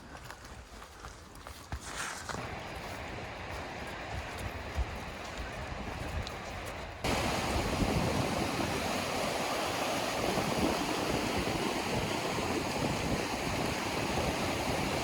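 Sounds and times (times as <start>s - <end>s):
low wind rumble: 2.4s - 15.0s
creek water rushing: 7.0s - 15.0s.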